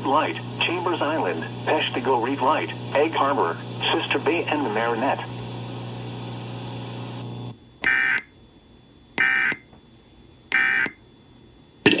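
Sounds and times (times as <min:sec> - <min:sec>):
steady radio hum: 0:00.0 - 0:08.4, 0:09.2 - 0:11.2
alert data tone bursts: 0:09.2 - 0:09.6.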